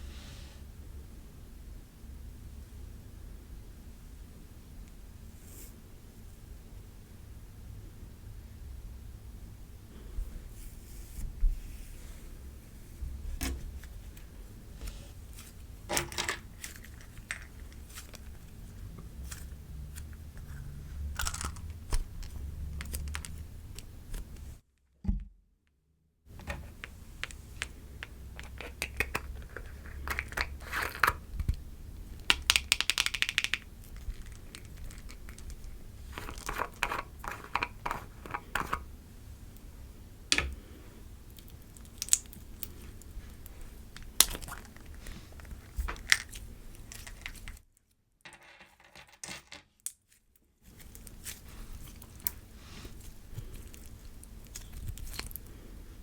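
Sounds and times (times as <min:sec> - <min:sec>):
slime squishing and crackling: 0:41.3 - 0:47.6, 0:50.7 - 0:55.5.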